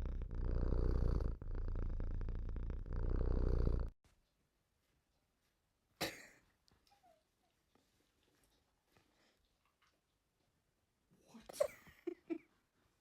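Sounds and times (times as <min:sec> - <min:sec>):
cat purring: 0:00.0 - 0:04.0.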